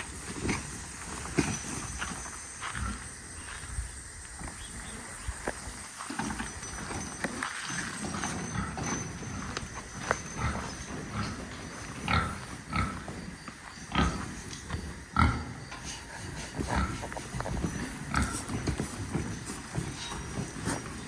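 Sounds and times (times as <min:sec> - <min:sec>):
pigs grunting: 0:08.0 - 0:21.0.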